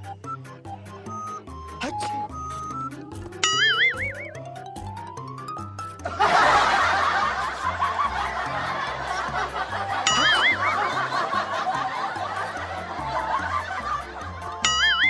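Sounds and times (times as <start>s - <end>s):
wobbling cartoon tone: 1.8s - 2.2s
crowd laughing: 6.1s - 14.6s.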